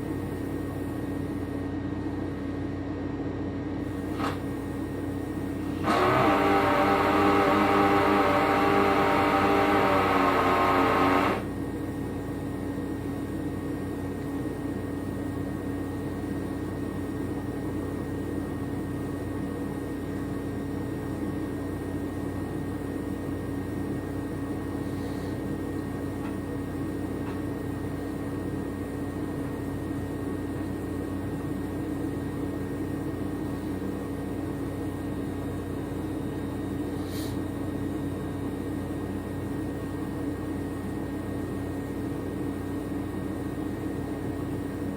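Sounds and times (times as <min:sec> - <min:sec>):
machine humming: 0:04.1 - 0:11.6
loud steady tones: 0:05.7 - 0:11.5.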